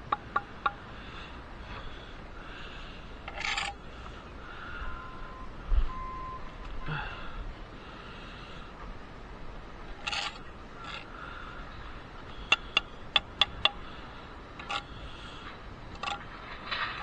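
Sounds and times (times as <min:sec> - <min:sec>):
short steady beeps: 0:04.8 - 0:07.0.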